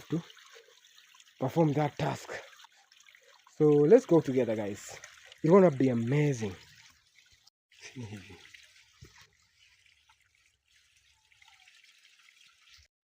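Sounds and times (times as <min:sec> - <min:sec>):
water trickling: 0:00.0 - 0:12.9.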